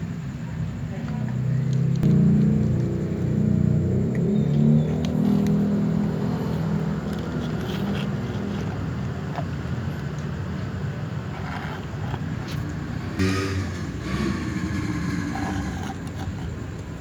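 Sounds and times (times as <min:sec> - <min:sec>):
road traffic rumble: 0:00.0 - 0:17.0
short pitched sound: 0:13.2 - 0:16.0.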